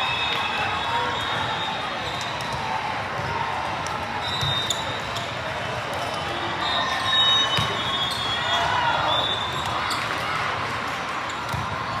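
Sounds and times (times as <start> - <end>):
sneaker squeaks: 4.2 - 5.3, 6.0 - 10.2.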